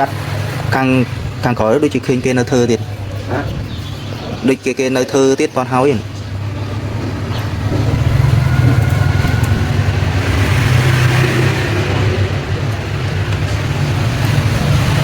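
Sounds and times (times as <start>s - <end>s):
motor humming: 6.0s - 15.0s.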